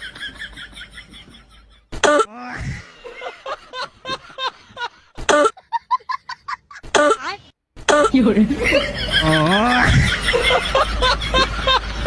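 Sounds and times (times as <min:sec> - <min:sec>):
harsh coughs: 0:02.0 - 0:02.4.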